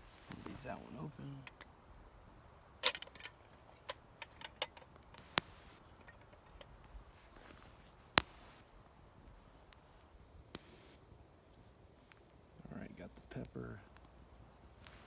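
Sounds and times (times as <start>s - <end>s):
campfire crackling: 0.0s - 15.0s
loud fire pops: 4.9s - 5.8s.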